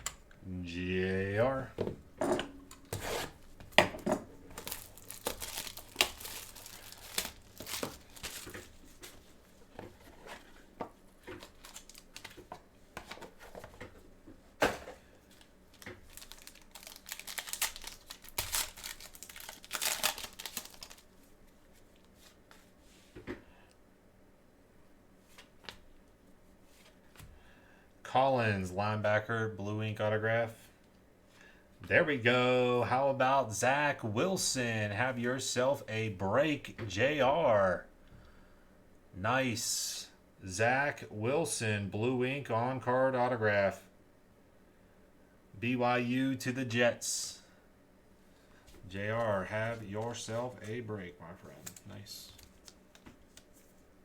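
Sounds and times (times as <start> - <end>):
wrapping torn and crinkled: 4.4 - 9.2, 11.4 - 12.4, 15.3 - 21.2, 51.4 - 53.8
cards being handled: 4.5 - 10.5, 15.4 - 21.0, 49.1 - 53.9.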